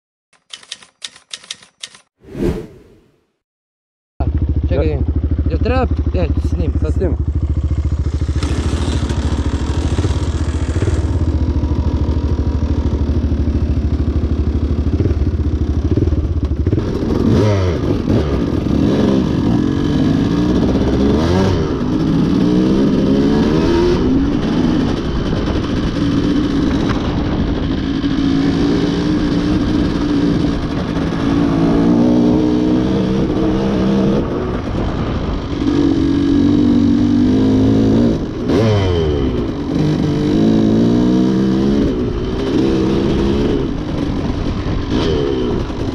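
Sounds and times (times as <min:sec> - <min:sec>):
motorcycle engine revving: 0:04.2 - 0:45.9.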